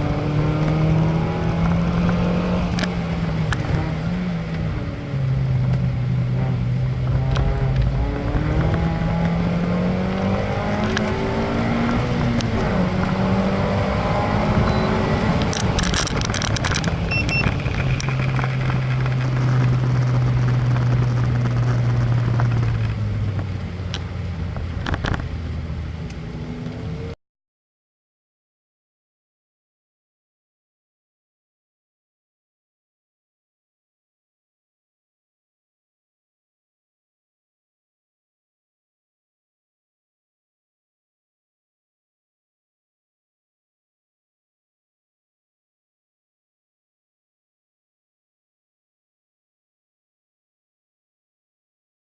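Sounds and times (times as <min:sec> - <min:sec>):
race vehicle engine accelerating: 0:00.0 - 0:27.2
wind noise: 0:06.4 - 0:23.8.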